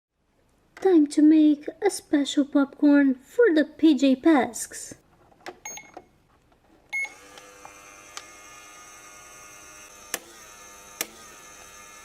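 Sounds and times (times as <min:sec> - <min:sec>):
toy microwave beep: 0:05.6 - 0:06.0, 0:06.9 - 0:07.2.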